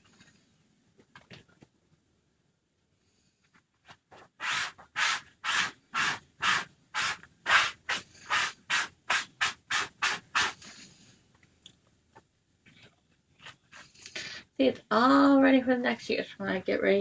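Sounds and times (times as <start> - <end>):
hand scrubbing a surface: 3.9 - 11.0.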